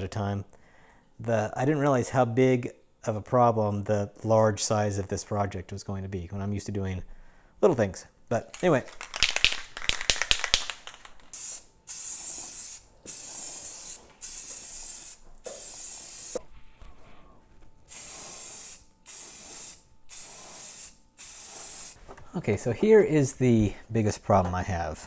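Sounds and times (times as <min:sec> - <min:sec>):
spray can rattling: 0:08.4 - 0:16.4, 0:17.9 - 0:22.0
spray paint hissing: 0:09.0 - 0:16.4, 0:17.9 - 0:22.0.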